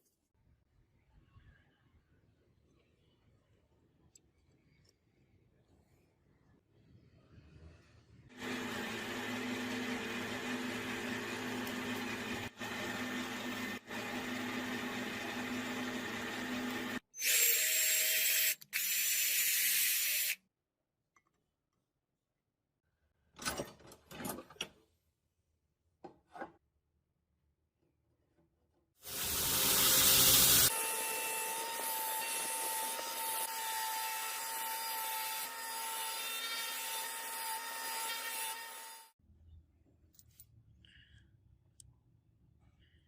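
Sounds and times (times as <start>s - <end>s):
electric power tool running: 8.4s - 17.0s, 29.1s - 34.3s
hissy power tool: 29.0s - 33.5s.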